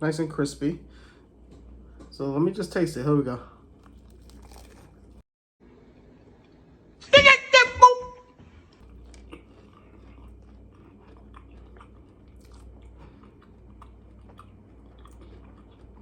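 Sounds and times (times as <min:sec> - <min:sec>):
chewing crunches: 0:03.6 - 0:05.2, 0:08.7 - 0:16.0.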